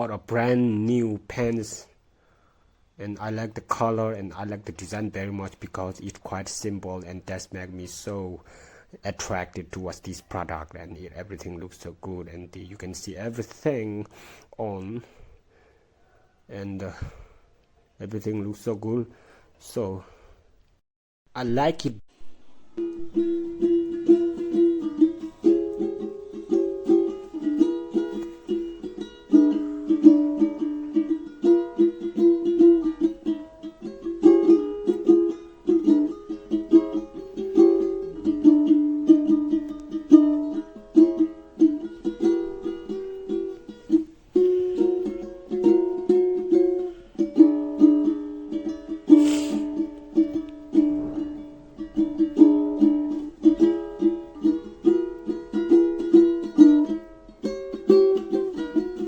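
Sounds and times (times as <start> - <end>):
bouncy plucked-string music: 22.7 - 59.0
brief hiss: 49.1 - 49.8.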